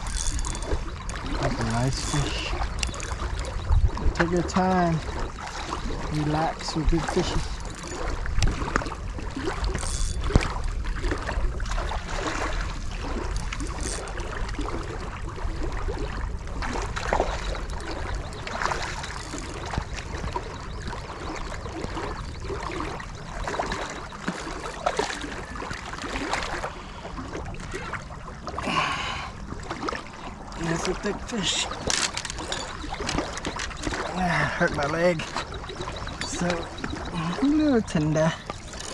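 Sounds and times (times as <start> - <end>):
water splashing and lapping: 0.0 - 38.9.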